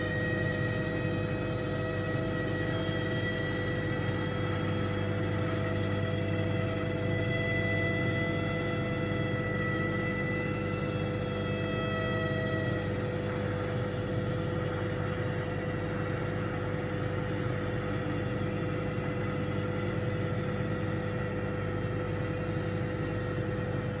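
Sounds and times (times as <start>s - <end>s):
microwave oven humming: 0.0s - 24.0s.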